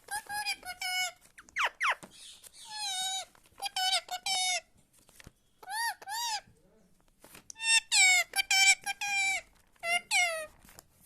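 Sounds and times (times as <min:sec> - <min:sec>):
parrot talking: 0:00.0 - 0:02.0, 0:02.6 - 0:04.7, 0:05.6 - 0:06.5, 0:07.6 - 0:10.6.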